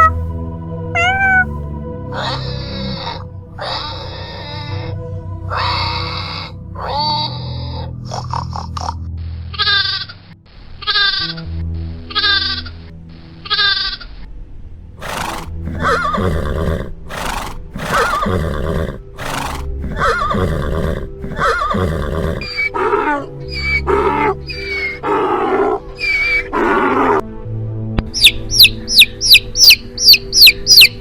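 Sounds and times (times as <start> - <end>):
animal calls: 0.0 - 0.3, 1.0 - 4.7, 15.0 - 27.2
background music: 0.0 - 31.0.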